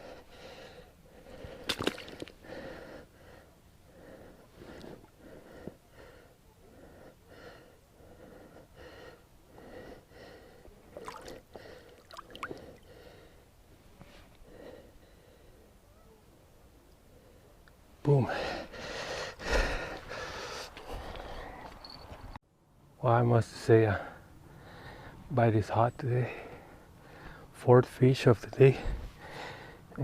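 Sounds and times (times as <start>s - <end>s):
person breathing hard: 0.0s - 13.6s, 14.4s - 15.7s, 18.2s - 21.8s, 24.1s - 25.2s, 26.3s - 27.5s, 28.7s - 30.0s.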